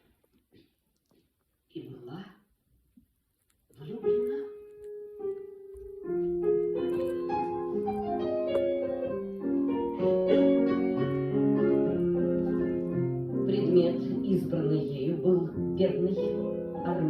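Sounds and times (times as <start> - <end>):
piano music: 4.0 - 17.0.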